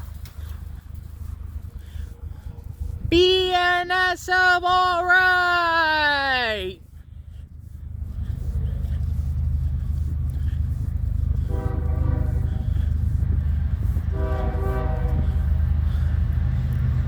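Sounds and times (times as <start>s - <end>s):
low rumble of locomotives: 0.0s - 3.2s, 6.4s - 17.0s
locomotive horn blasts: 11.4s - 12.8s, 14.0s - 15.6s.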